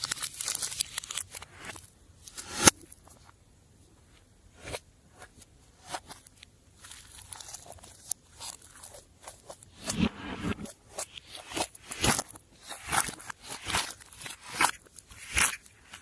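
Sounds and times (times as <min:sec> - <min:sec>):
slime crackling and popping: 0:00.0 - 0:02.9, 0:10.9 - 0:16.0.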